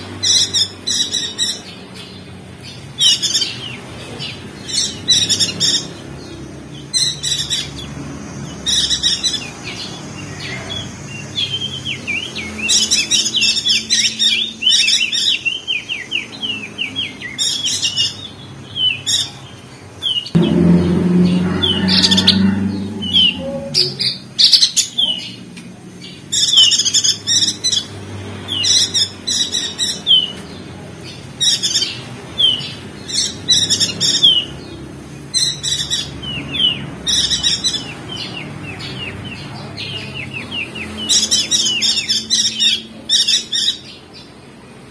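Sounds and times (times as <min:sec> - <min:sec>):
bird twittering chirps: 0:00.0 - 0:44.4
other birds calling: 0:00.0 - 0:44.9
low rumble: 0:20.4 - 0:24.2.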